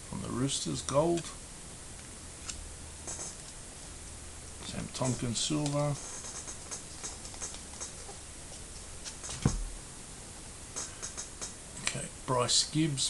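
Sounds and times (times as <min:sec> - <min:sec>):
cards clicking while handled: 0:05.5 - 0:09.5.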